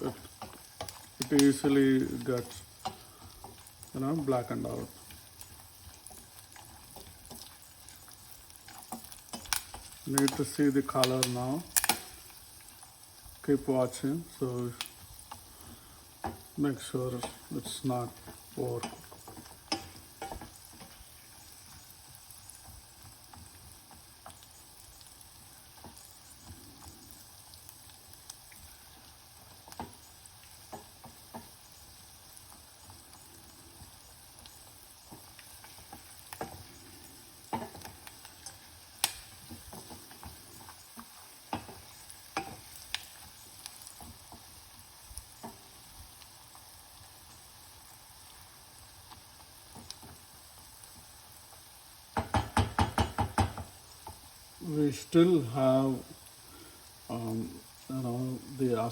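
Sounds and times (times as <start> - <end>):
food sizzling in oil: 0.0 - 58.9
spoon knocking against pan: 52.2 - 54.2.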